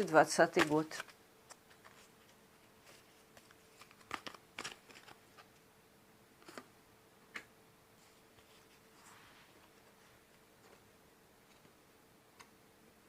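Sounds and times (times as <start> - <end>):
faint steady hum: 0.0 - 13.0
cards clicking and flicking: 0.5 - 2.0.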